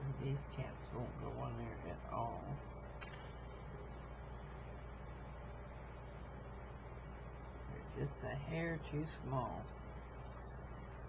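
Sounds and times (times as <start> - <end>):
low hum with faint hiss: 0.0 - 11.0.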